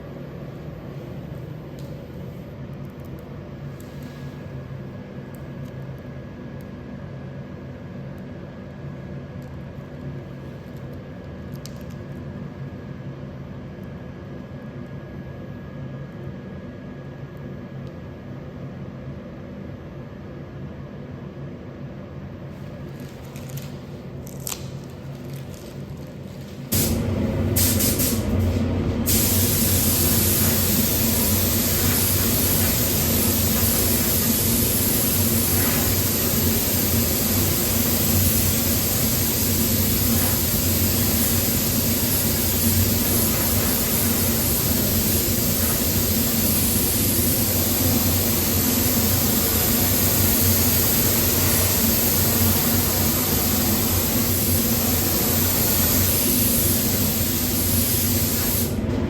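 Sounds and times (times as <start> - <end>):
low machine hum: 0.0 - 59.0
spray gun hissing: 26.7 - 58.8.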